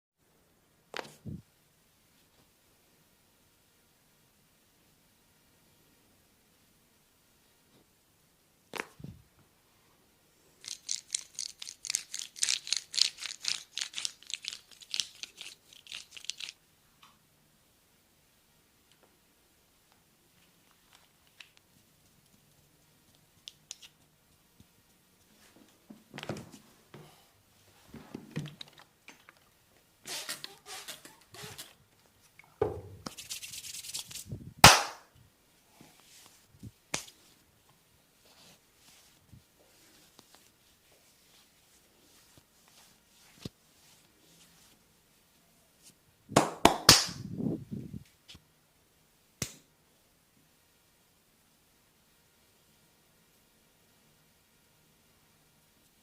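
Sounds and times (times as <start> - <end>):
rubbing and brushing on skin: 10.6 - 16.6, 33.0 - 34.4, 35.8 - 37.5, 38.1 - 44.9.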